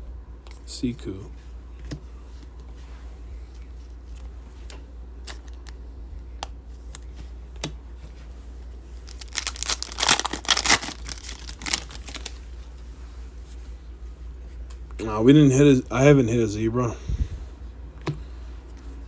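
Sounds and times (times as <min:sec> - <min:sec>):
wrapper tearing and crackling: 0:09.0 - 0:12.5.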